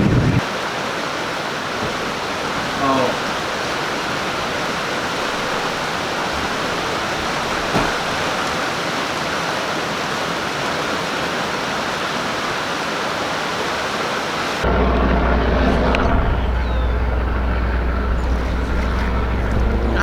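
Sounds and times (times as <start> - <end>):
heavy rain pouring: 0.0 - 20.0.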